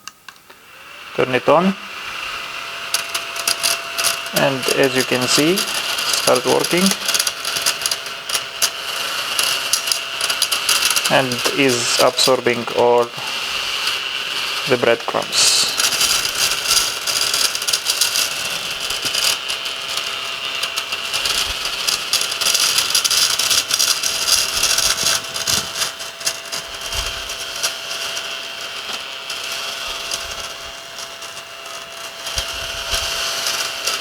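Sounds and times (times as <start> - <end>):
small vacuum cleaner whine: 0.0 - 34.0
crumbs clicking and rattling: 2.8 - 34.0.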